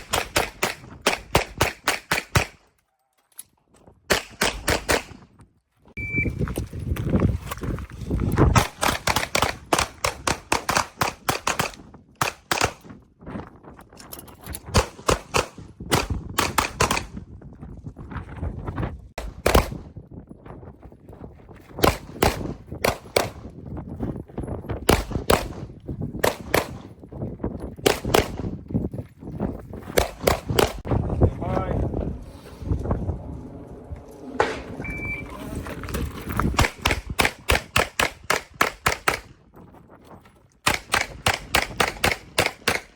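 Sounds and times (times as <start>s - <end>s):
pistol shots: 0.0s - 2.6s, 4.1s - 5.2s, 19.2s - 19.8s, 21.8s - 23.5s, 24.9s - 26.9s, 27.8s - 28.4s, 30.0s - 30.9s, 36.6s - 39.3s, 40.6s - 42.9s.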